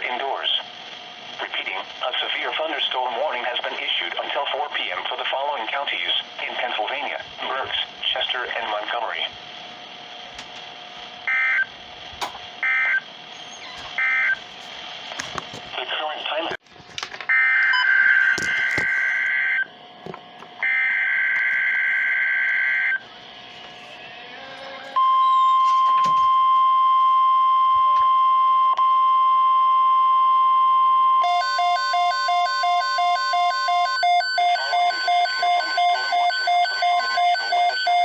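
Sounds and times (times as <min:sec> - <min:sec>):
steady warning alarm tone: 0:11.2 - 0:11.8, 0:12.6 - 0:13.1, 0:14.0 - 0:14.4, 0:17.3 - 0:19.8, 0:20.6 - 0:23.1, 0:24.9 - 0:38.0
rapid electronic beeping: 0:31.2 - 0:38.0
screechy digital data tones: 0:31.2 - 0:38.0.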